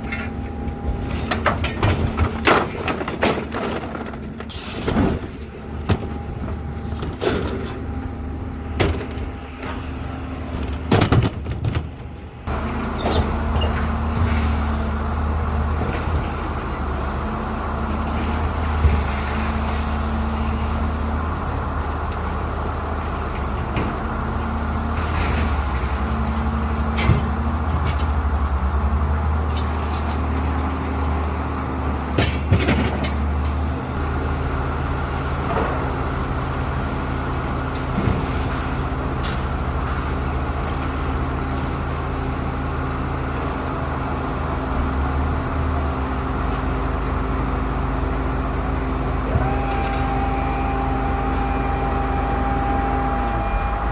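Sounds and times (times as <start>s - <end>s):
vehicle engine running: 12.1s - 53.9s.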